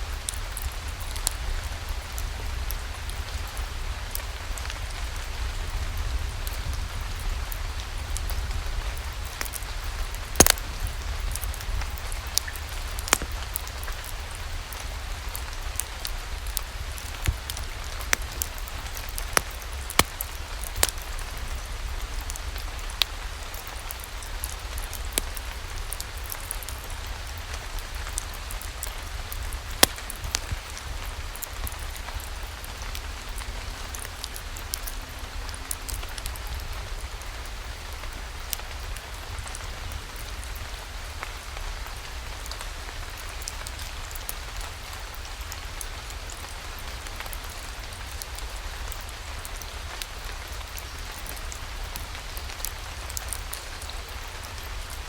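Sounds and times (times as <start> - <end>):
steady rain: 0.0 - 55.0
sharp pops and ticks: 9.3 - 21.4, 28.2 - 32.2.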